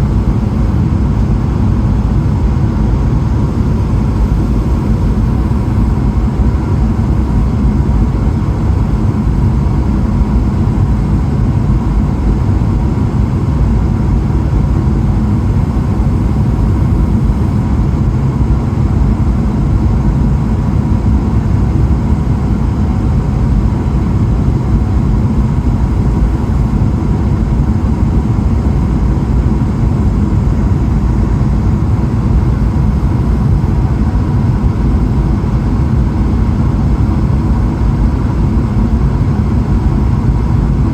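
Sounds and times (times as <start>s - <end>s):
aircraft cabin engine roar: 0.0s - 40.9s
faint steady whine: 0.0s - 40.9s.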